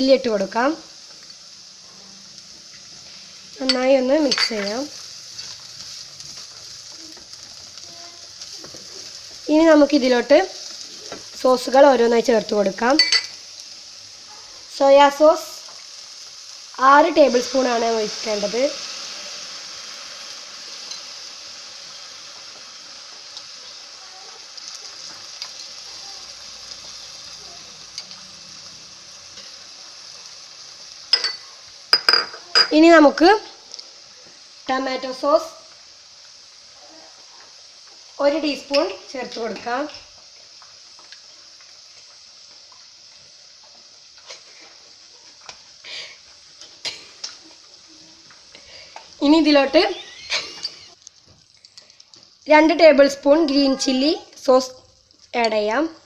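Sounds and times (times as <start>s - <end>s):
vegetables sizzling in oil: 0.0s - 56.0s
spoon tapping pan: 3.6s - 4.8s.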